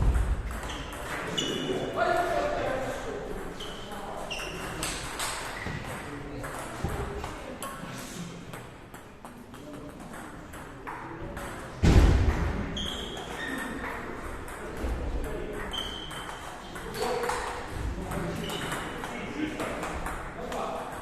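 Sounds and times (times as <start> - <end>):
heavy thump: 11.8 - 12.5
table tennis balls clicking: 13.7 - 21.0.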